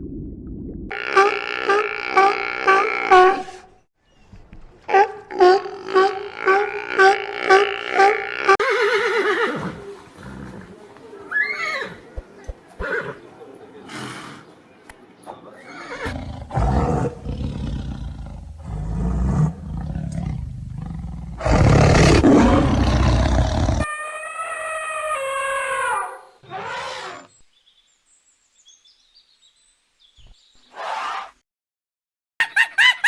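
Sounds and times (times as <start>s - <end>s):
animal roaring: 16.0s - 23.9s
long falling animal call: 22.4s - 27.3s.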